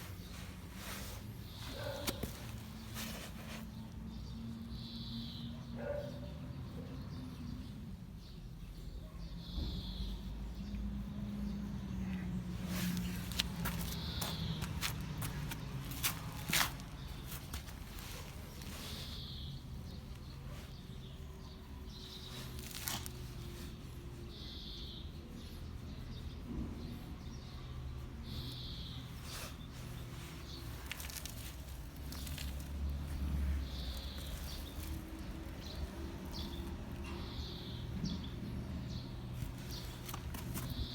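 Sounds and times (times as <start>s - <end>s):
low outdoor background rumble: 0.0s - 40.9s
bird chirping: 11.4s - 40.9s.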